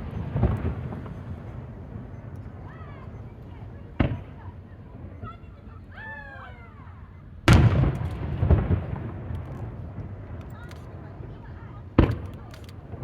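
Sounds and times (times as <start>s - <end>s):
firework boom echoing: 0.0s - 5.2s, 7.5s - 10.4s
faint firework crackles: 0.0s - 13.0s.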